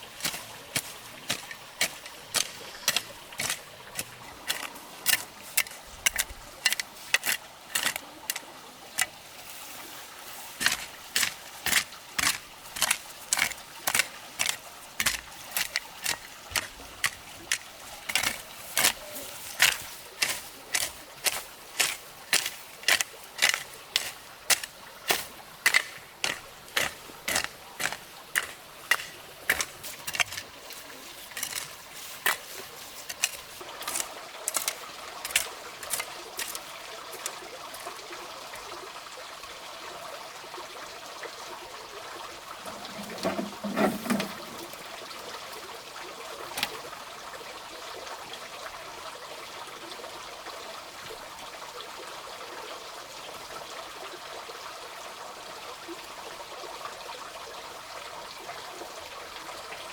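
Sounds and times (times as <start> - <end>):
dull rustle: 0.0 - 37.9
trickling water: 0.0 - 59.9.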